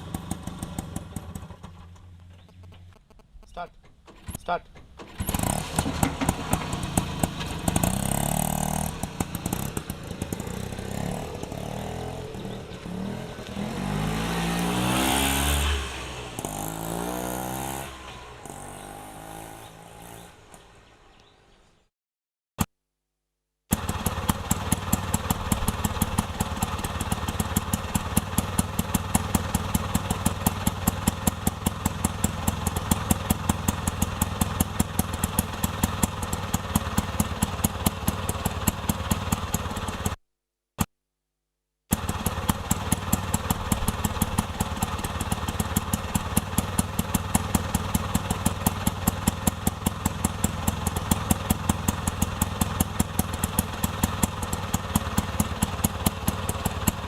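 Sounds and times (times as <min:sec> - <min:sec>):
engine chugging steadily: 0:00.0 - 0:02.6, 0:03.6 - 0:14.1, 0:23.7 - 0:40.2, 0:41.9 - 0:57.0
small engine revving: 0:04.2 - 0:21.3, 0:23.7 - 0:40.2, 0:41.9 - 0:57.0.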